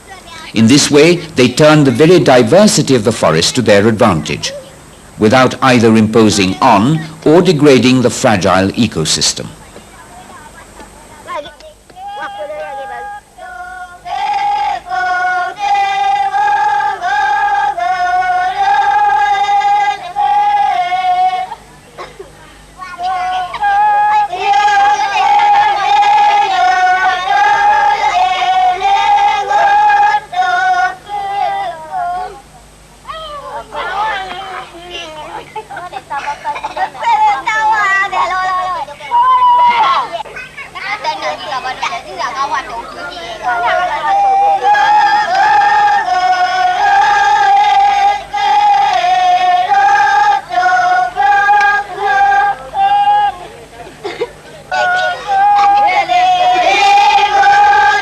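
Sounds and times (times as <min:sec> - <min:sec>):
high voices singing chant-like melody: 0:11.9 - 0:22.1, 0:22.8 - 0:32.8, 0:42.9 - 0:53.6, 0:54.6 - 0:58.0.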